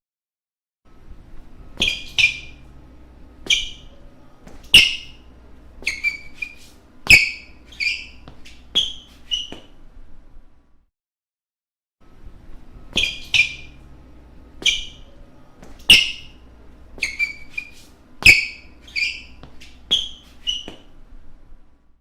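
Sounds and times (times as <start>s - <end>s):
shoe soles squeaking on gym floor: 1.7s - 2.7s, 3.4s - 9.8s, 12.8s - 13.9s, 14.6s - 21.0s.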